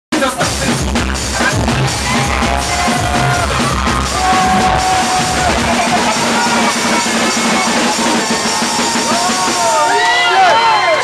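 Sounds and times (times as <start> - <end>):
loud soca music: 0.2 - 11.0.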